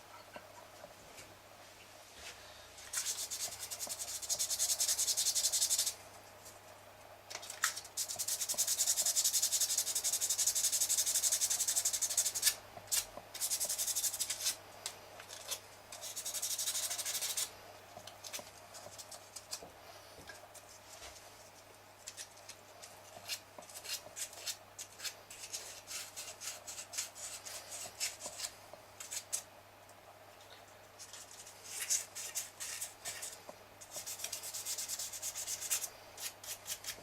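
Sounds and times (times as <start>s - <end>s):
wet sandpaper scratching plastic: 2.9s - 6.0s, 16.0s - 17.5s.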